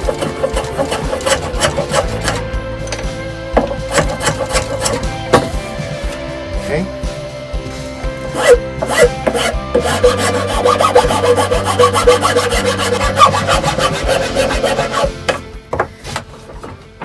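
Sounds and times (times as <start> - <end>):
hand tool rasping along wood: 0.0 - 2.6, 3.5 - 5.8, 8.3 - 16.7.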